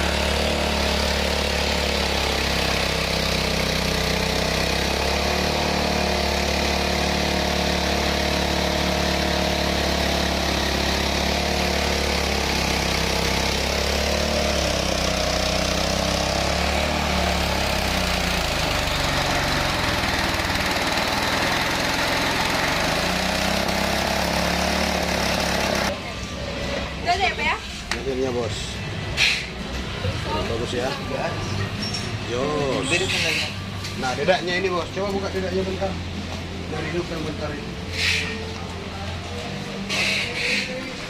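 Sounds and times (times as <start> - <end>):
rice milling machine drone: 0.0 - 27.0
engine hum: 0.0 - 41.0.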